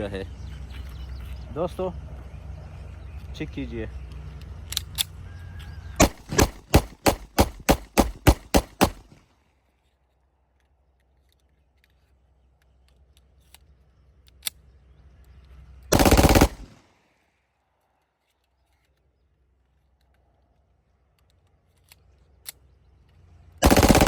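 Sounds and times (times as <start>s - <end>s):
pistol automatic burst: 6.0s - 9.2s, 15.9s - 16.8s, 23.6s - 24.0s.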